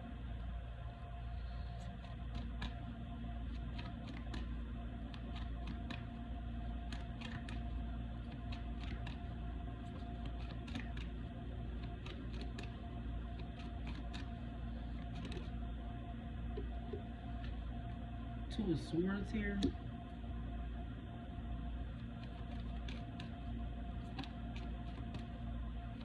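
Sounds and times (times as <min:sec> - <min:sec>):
low hum: 0:00.0 - 0:26.0
cards being shuffled: 0:01.8 - 0:02.8, 0:03.4 - 0:06.1, 0:06.8 - 0:15.6, 0:22.0 - 0:23.4, 0:24.0 - 0:25.3.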